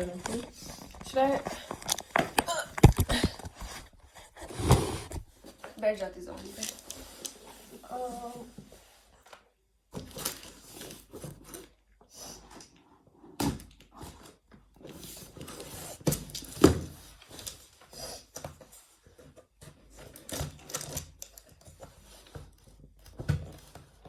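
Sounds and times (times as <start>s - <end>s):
objects knocking and thumping: 0.0s - 5.6s.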